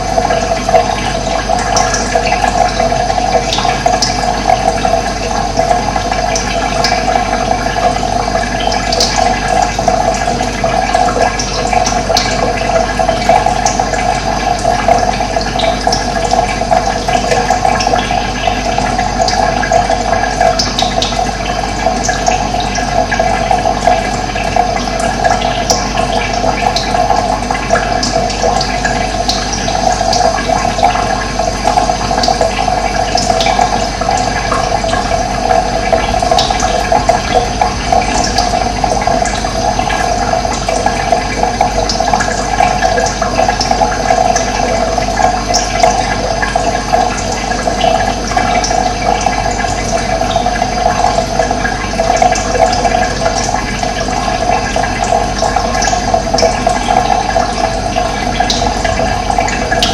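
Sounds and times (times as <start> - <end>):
running water: 0.0 - 59.9.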